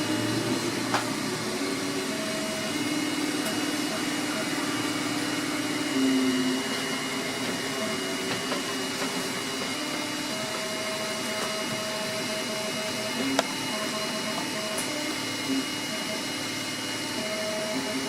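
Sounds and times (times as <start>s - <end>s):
printer fan hum: 0.0s - 18.0s
stepper motor tones: 0.0s - 18.0s.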